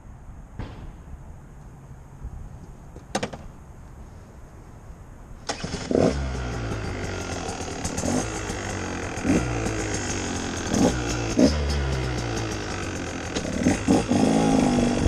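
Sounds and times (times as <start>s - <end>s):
motorcycle engine starting and idling: 5.4s - 15.0s.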